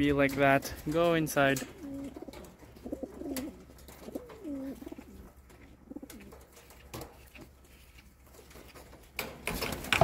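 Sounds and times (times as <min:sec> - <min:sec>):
pigeon cooing: 0:01.6 - 0:06.6.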